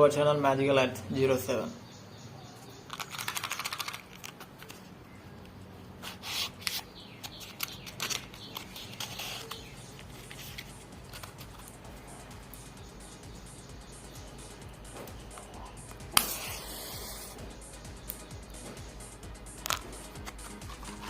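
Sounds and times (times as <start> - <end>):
matchbox clicking: 2.9 - 4.8, 6.0 - 11.8, 19.6 - 21.0
matchbox scraping: 2.9 - 4.8, 6.0 - 11.8, 15.3 - 17.4, 19.6 - 21.0.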